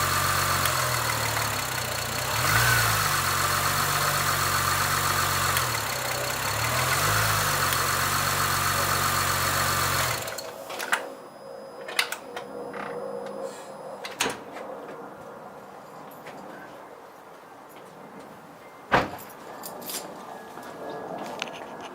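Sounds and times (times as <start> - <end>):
car engine idling: 0.0 - 10.6.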